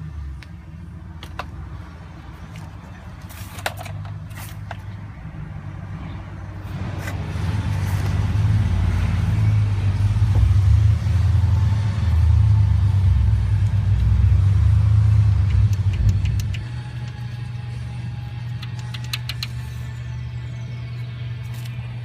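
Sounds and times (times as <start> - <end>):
engine running rough: 0.0 - 22.0
sharp engine clicks: 15.0 - 17.2, 18.5 - 19.7.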